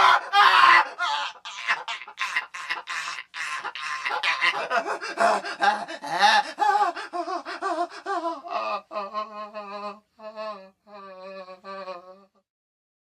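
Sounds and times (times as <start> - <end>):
man yelling and crying: 0.0 - 7.9.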